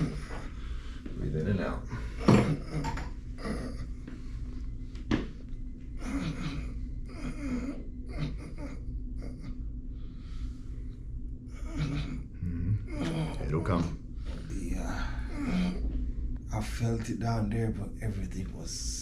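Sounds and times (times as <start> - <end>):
person breathing slowly: 0.0 - 1.2, 9.8 - 11.2.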